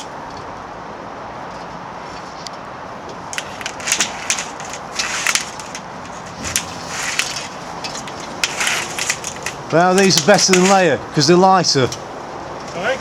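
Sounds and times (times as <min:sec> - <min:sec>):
steady background hiss: 0:00.0 - 0:13.0
short uneven crunching strokes: 0:01.5 - 0:13.0
scraping and knocking: 0:03.2 - 0:10.9.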